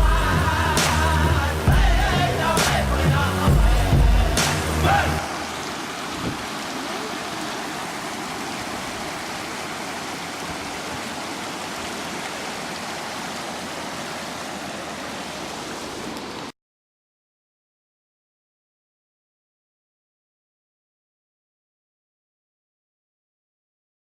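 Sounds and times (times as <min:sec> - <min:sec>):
water rushing: 0:00.0 - 0:16.6.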